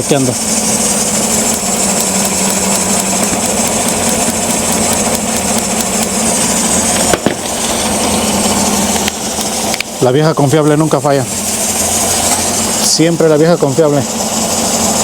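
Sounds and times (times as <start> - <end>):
car engine idling with misfire: 0.0 - 15.0
spark arcing crackle: 0.4 - 10.1.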